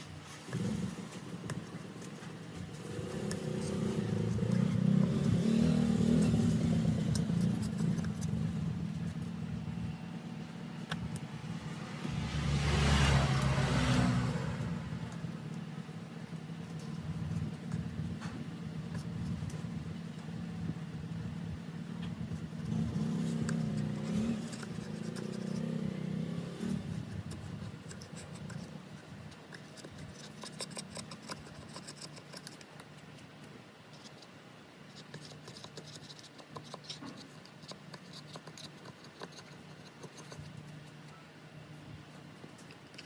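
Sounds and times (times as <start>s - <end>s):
small tools scraping and clicking: 0.3s - 9.3s, 22.0s - 34.3s, 34.9s - 41.2s, 42.5s - 43.0s.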